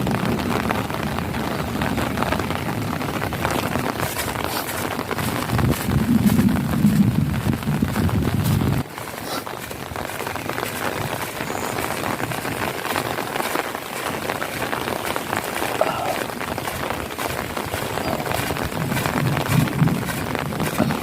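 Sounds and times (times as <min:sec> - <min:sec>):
rain falling: 0:00.0 - 0:21.0
low rumble: 0:05.2 - 0:08.8.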